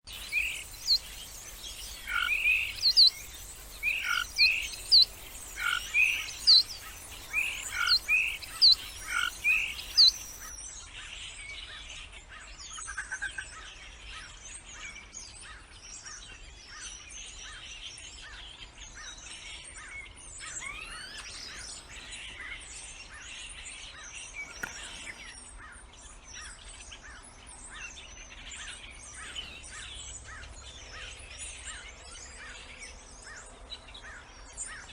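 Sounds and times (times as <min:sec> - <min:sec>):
chatter of many birds: 0:00.0 - 0:34.9
bird call phrase: 0:00.1 - 0:10.5.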